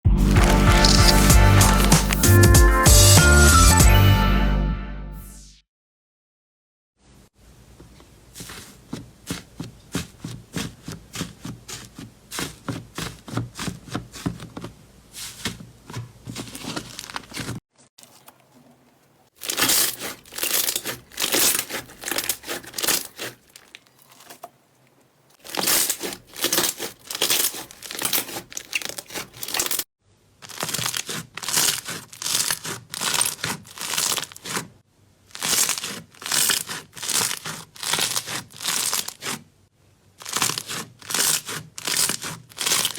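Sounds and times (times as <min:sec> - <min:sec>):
slime squeezed crackling and popping: 0:00.3 - 0:02.3, 0:25.4 - 0:29.8, 0:30.5 - 0:34.6, 0:35.3 - 0:39.3.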